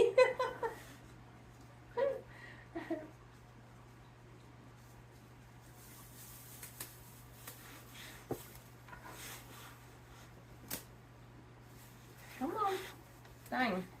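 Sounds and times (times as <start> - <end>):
plastic covers rustling: 5.6 - 9.5.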